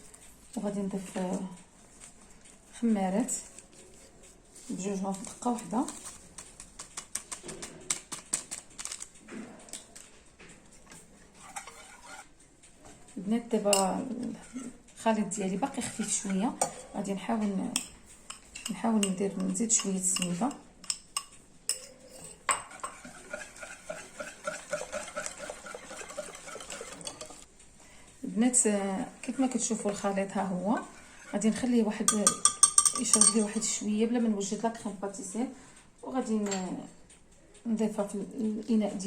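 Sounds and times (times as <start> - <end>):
utensil scraping bowl: 10.7 - 12.4, 13.7 - 17.2, 17.8 - 27.5, 29.4 - 33.7
utensil clicking against bowl: 17.8 - 27.5.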